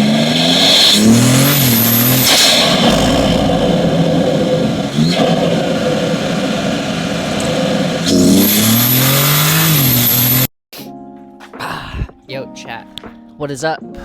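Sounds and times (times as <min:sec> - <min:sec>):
car engine revving: 0:00.0 - 0:10.5
high thin whine: 0:00.3 - 0:10.5.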